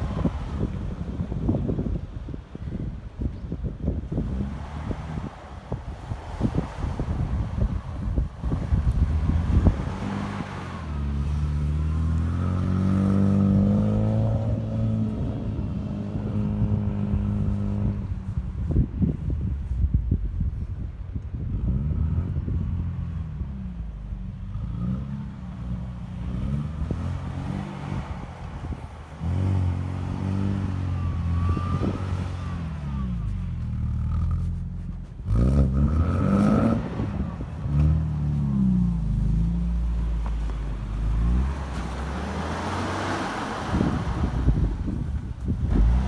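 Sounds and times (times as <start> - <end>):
suv engine revving under load: 23.8 - 46.0.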